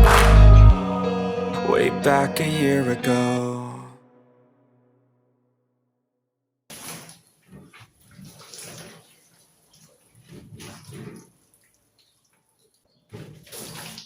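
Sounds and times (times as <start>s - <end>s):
water splashing and running: 6.7s - 14.0s.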